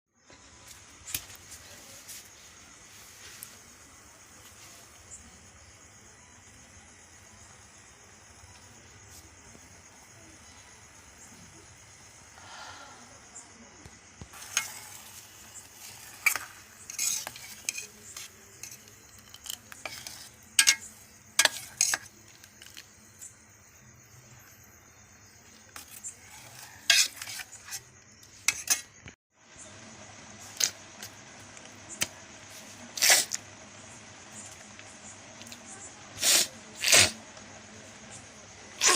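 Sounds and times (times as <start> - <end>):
utensils and dishes clinking: 14.4 - 22.8.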